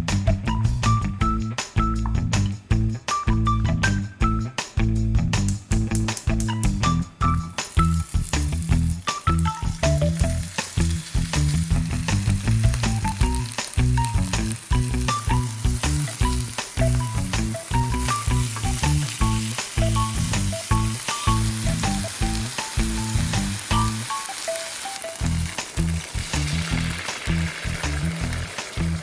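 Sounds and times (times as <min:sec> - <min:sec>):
background music with beat: 0:00.0 - 0:29.0
food sizzling in oil: 0:06.8 - 0:29.0.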